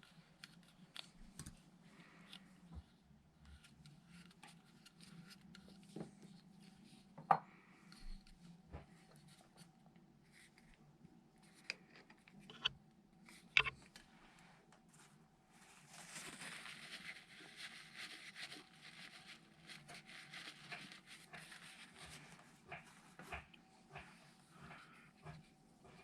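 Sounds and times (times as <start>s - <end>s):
objects being handled: 11.4s - 14.2s.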